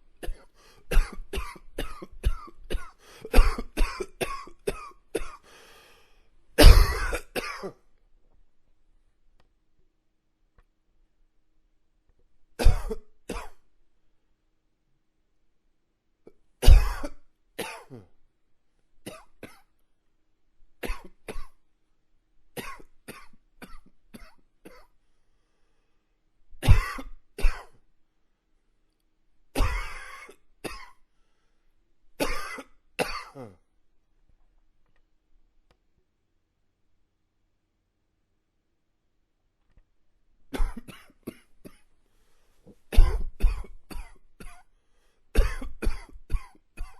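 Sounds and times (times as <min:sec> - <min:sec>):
man coughing: 0:00.2 - 0:05.4, 0:06.6 - 0:07.8, 0:12.6 - 0:13.6, 0:16.6 - 0:18.1, 0:26.6 - 0:27.8, 0:29.6 - 0:31.0, 0:32.2 - 0:33.6, 0:40.5 - 0:41.8, 0:42.9 - 0:44.7, 0:45.4 - 0:46.9.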